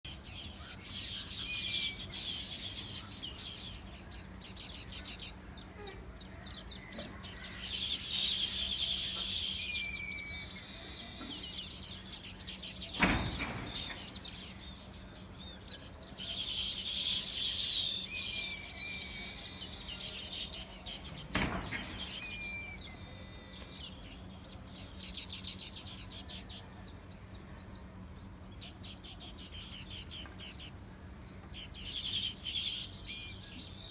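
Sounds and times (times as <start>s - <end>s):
small birds chirping: 0.0s - 33.9s.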